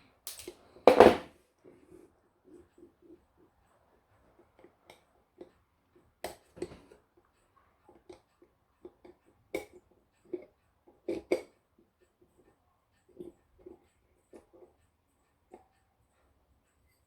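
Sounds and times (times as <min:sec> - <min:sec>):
small clock parts clicking: 0:00.2 - 0:00.6.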